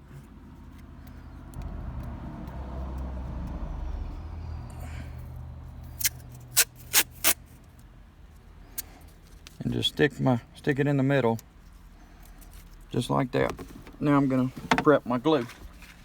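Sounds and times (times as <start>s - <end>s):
low rumble of passing vehicle: 0.0s - 9.7s
masking tape ripping: 5.9s - 7.4s.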